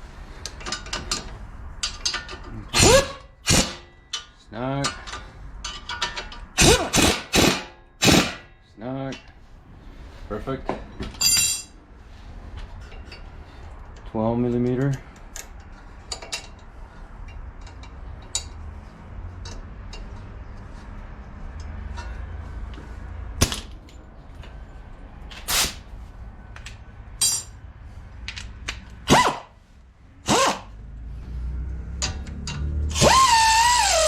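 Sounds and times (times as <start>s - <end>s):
metal on metal clanks: 27.2s - 27.6s.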